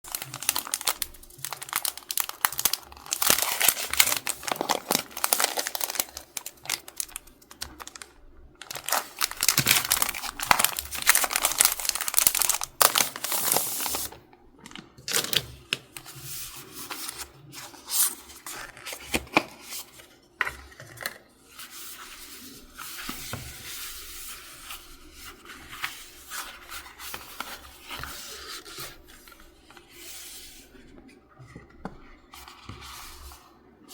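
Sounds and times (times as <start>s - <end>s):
packaging crinkling and tearing: 0.1s - 16.2s.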